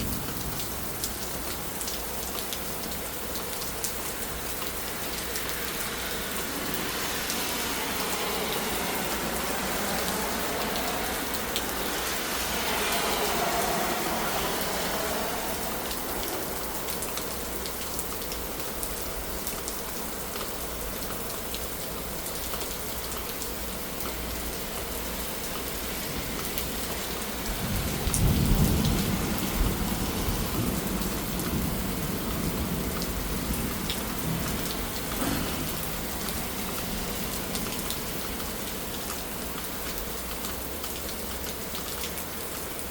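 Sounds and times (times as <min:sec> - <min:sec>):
heavy rain pouring: 0:00.0 - 0:42.9
thunder rumbling: 0:27.4 - 0:38.2.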